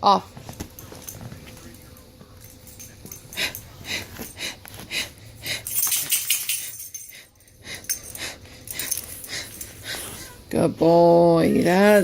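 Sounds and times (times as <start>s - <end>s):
person breathing fast and heavily: 3.2s - 10.4s.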